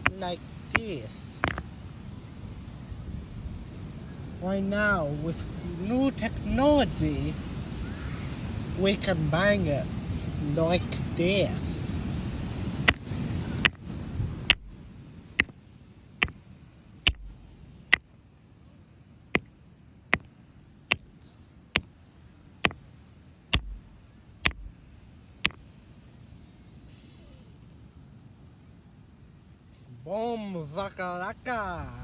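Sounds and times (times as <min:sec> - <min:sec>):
rock striking rock: 0:00.0 - 0:01.7, 0:12.9 - 0:13.9, 0:14.5 - 0:15.5, 0:17.1 - 0:18.0, 0:20.9 - 0:21.1, 0:23.6 - 0:24.8.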